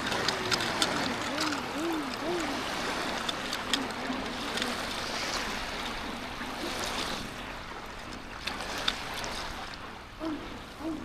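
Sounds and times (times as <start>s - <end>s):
faint clicks: 0.0s - 4.8s
rushing water: 0.0s - 11.0s.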